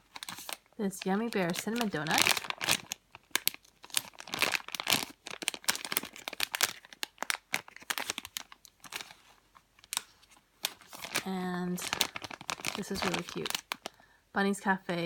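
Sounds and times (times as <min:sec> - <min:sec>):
plastic packaging crinkling: 0:00.0 - 0:14.0.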